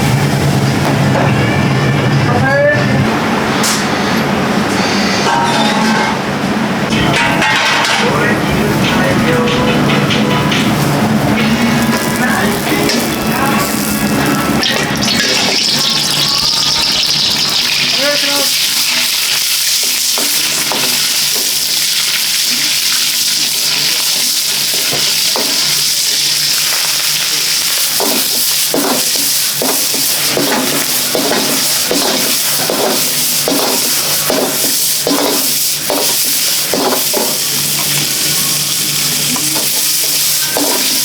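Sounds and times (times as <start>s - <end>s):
utensil striking and scraping wok: 8.9s - 41.0s
rice sizzling in a wok: 11.4s - 41.0s.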